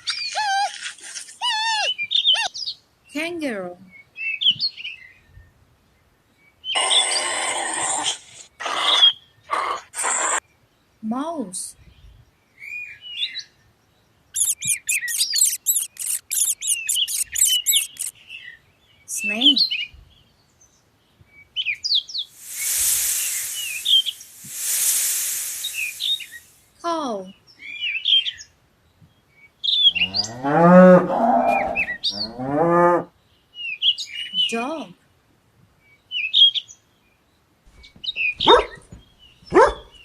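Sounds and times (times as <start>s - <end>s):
mouse squeaking: 14.4s - 18.1s.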